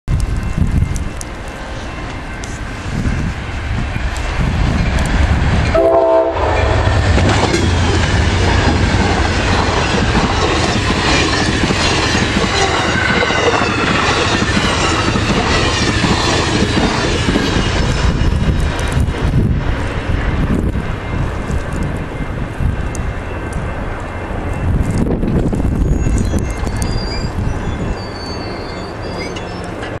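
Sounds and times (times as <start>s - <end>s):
passenger train passing: 0.1s - 30.0s
train horn: 5.7s - 7.7s, 12.4s - 15.8s.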